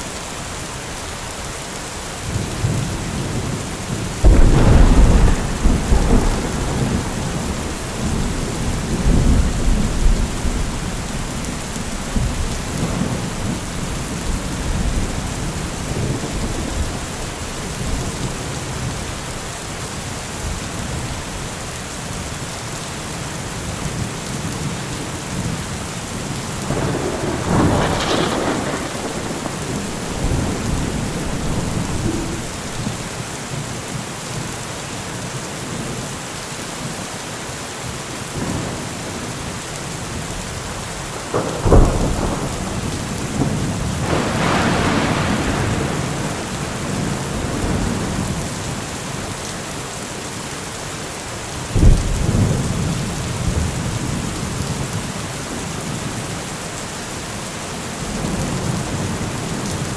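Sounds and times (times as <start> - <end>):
steady rain: 0.0 - 59.9
rolling thunder: 2.3 - 19.0, 26.4 - 33.7, 40.2 - 49.3, 51.7 - 56.2.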